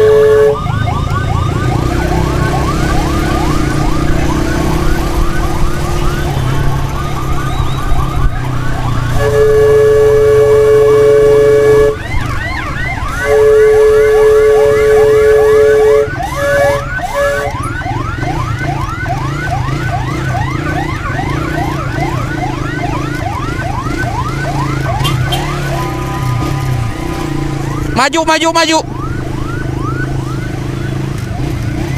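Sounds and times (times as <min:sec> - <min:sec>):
steady horn blasts: 0:00.0 - 0:00.7, 0:09.1 - 0:12.1, 0:13.0 - 0:17.7, 0:24.9 - 0:28.8
electronic siren wavering: 0:00.0 - 0:31.9
vehicle engine running: 0:00.0 - 0:31.9.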